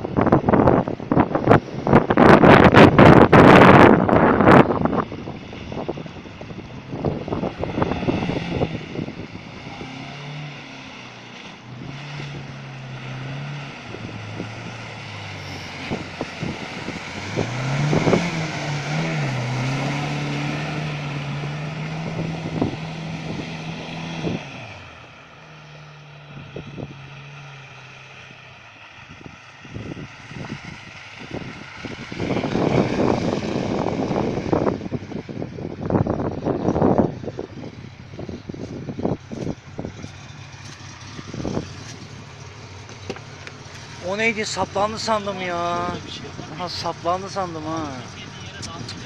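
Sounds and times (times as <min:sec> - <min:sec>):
water rushing: 0:00.0 - 0:36.2, 0:39.6 - 0:49.0
engine labouring and revving: 0:00.0 - 0:49.0.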